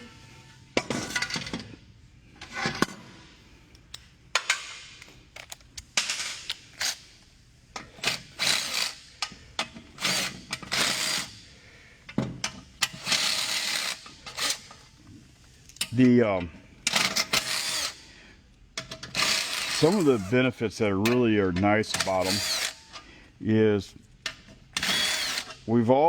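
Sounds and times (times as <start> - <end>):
hand ratchet clicking: 12.8 - 14.7, 21.9 - 23.0, 24.3 - 25.6.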